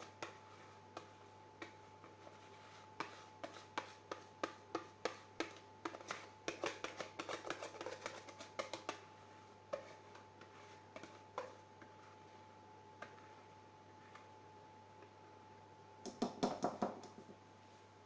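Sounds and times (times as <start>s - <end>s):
faint steady hum: 0.0s - 18.0s
utensil tapping on mixing bowl: 3.0s - 9.1s, 16.0s - 17.2s.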